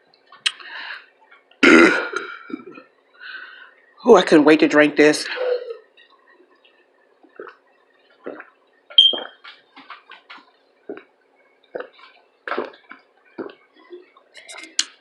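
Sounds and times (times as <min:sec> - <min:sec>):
person gulping water: 0:01.5 - 0:02.9, 0:05.9 - 0:15.0.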